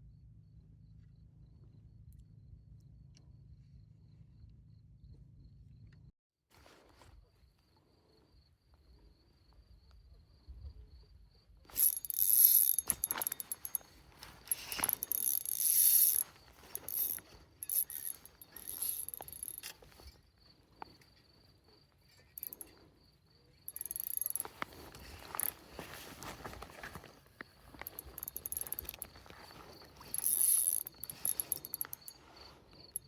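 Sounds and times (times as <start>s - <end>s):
fishing reel whirring and clicking: 11.7s - 20.1s, 22.4s - 22.8s, 23.7s - 27.0s, 27.6s - 33.0s.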